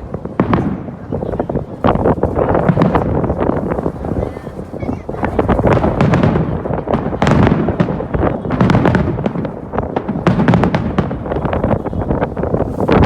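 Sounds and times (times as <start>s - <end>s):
continuous rumble: 0.0s - 13.0s
fireworks bangs and crackles: 0.0s - 13.0s.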